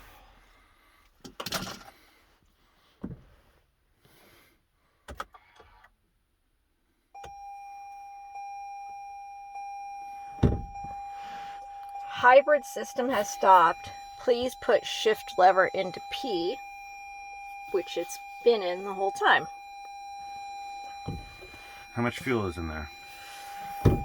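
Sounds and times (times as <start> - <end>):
dashboard warning tone: 7.2 - 24.0
thump: 10.4 - 11.0.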